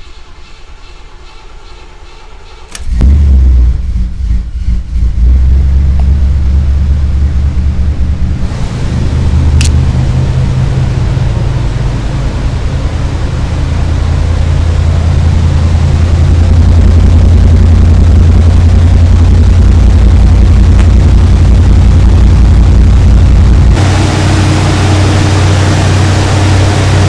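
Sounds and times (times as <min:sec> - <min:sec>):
car engine running: 0:02.7 - 0:27.0.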